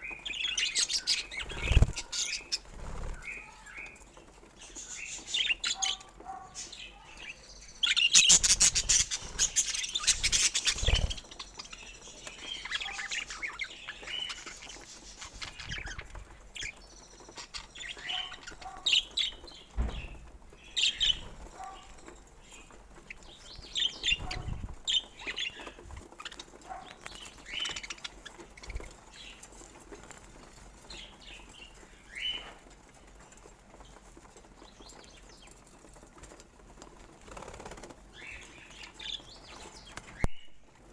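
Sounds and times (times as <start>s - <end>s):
budgerigars chirping: 0.1s - 4.0s, 4.6s - 22.0s, 22.6s - 29.4s.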